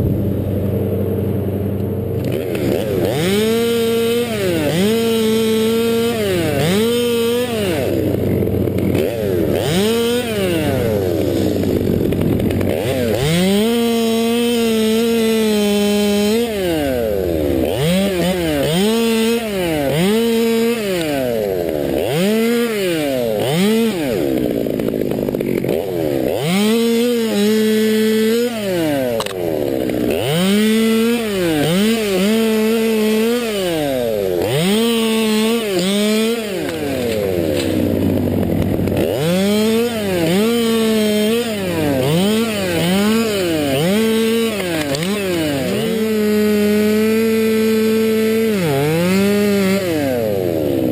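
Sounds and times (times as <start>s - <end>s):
chainsaw revving and cutting wood: 0.0s - 50.9s.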